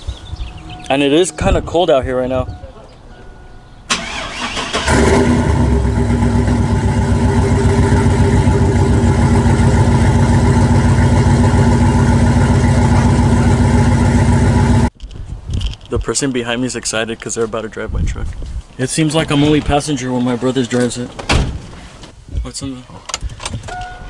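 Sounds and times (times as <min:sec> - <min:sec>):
engine cranking and idling: 0:03.9 - 0:14.9.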